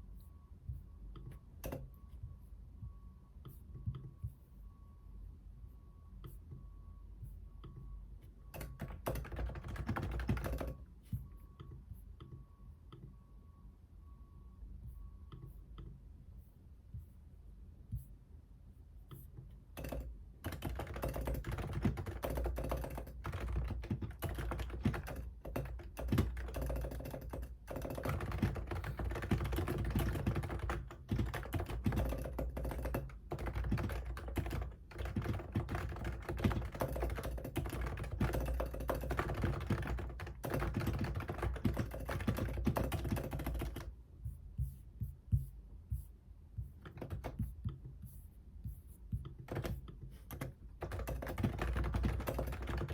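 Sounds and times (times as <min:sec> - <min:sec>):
typing on computer keyboard: 0:01.2 - 0:01.9, 0:07.6 - 0:10.9, 0:19.7 - 0:44.0, 0:46.8 - 0:47.9, 0:49.1 - 0:52.9.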